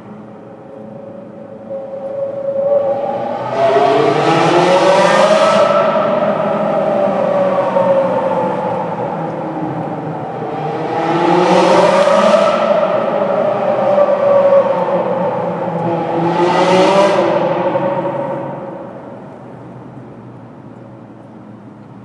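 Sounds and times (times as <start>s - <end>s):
sports car engine revving: 2.8s - 19.8s.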